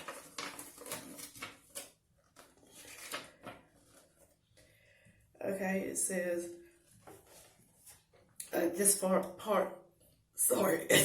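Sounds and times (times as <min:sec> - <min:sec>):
handling rustles and scrapes: 0:00.0 - 0:04.7, 0:06.7 - 0:08.4.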